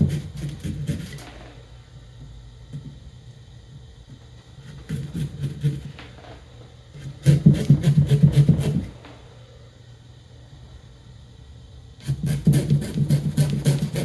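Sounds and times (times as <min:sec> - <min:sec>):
knife sawing through pumpkin: 0:00.0 - 0:01.2, 0:04.7 - 0:05.9, 0:07.0 - 0:08.9, 0:12.0 - 0:14.0.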